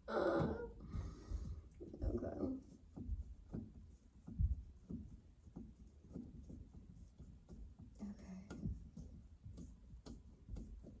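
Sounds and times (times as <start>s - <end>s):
knocks and taps of tools: 2.7s - 11.0s.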